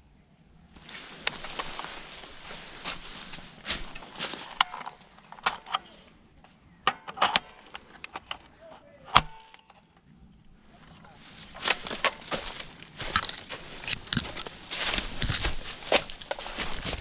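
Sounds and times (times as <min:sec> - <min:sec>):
rustling: 0:00.8 - 0:04.6, 0:11.2 - 0:17.0.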